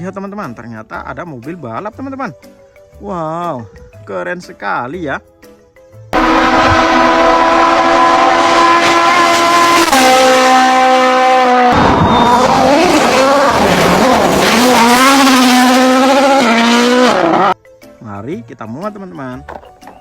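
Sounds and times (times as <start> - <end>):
race car engine whine: 6.2 - 17.6.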